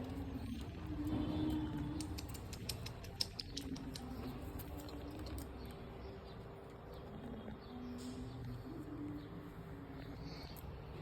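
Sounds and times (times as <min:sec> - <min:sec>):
parrot beak crunching: 0:01.6 - 0:05.5.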